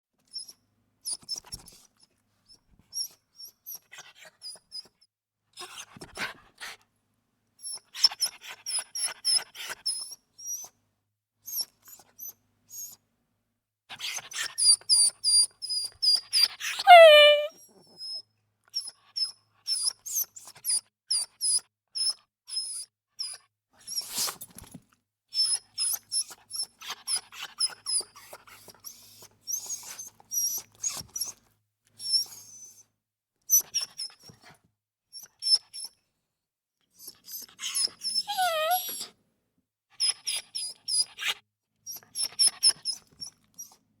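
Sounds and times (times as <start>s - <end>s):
dog whining: 16.8s - 17.5s, 37.3s - 39.1s
small dog whimpering: 16.8s - 17.5s, 37.3s - 39.1s.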